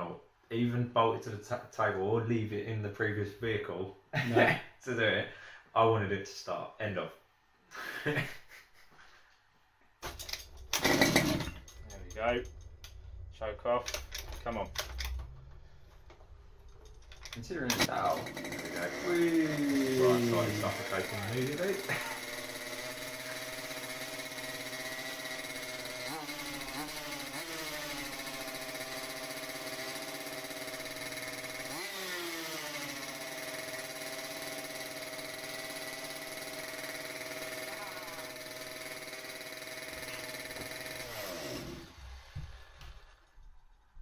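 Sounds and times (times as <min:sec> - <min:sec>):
small engine revving high: 0:17.8 - 0:42.8.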